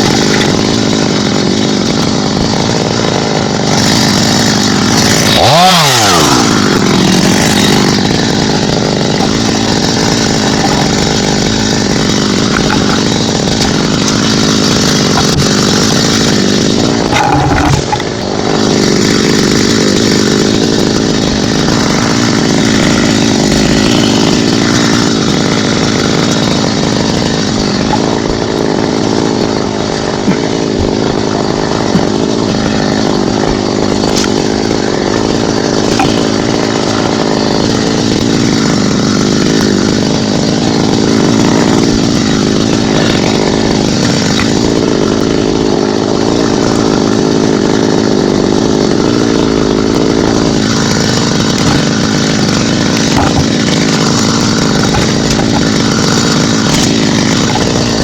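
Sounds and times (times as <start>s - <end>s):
chainsaw cutting into tree: 0.0s - 58.0s.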